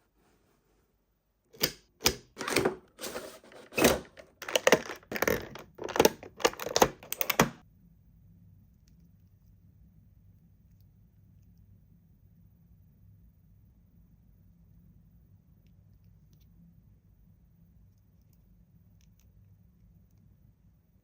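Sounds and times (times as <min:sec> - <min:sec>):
toys and packaging handled: 0:02.0 - 0:07.6.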